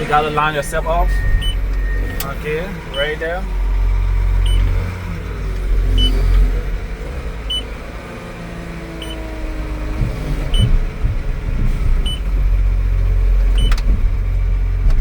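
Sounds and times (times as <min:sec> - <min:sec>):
whine: 0:00.0 - 0:07.7
diesel engine rumbling: 0:00.0 - 0:15.0
reverse alarm beeps: 0:00.5 - 0:03.7, 0:04.4 - 0:04.7, 0:05.9 - 0:06.2, 0:07.5 - 0:07.7, 0:09.0 - 0:09.2, 0:10.5 - 0:10.7, 0:12.0 - 0:12.2, 0:13.6 - 0:13.8
low knocks: 0:01.0 - 0:06.9, 0:09.1 - 0:15.0.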